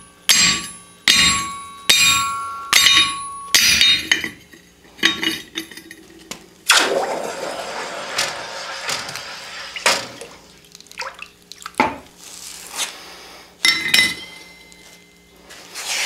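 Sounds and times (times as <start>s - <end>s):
hammer striking steel: 0.0s - 4.4s
metallic ringing tone: 0.0s - 4.4s, 13.6s - 15.6s.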